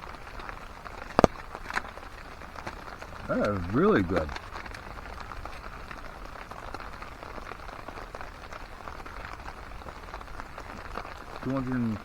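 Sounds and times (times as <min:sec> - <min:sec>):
steady rain falling: 0:00.0 - 0:12.0.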